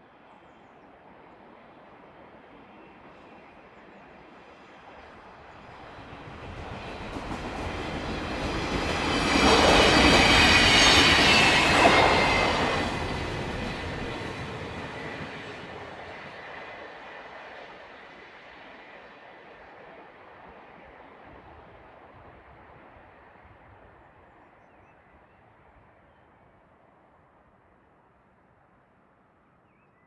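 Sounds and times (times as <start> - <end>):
train passing by rumbling: 4.8 - 18.2.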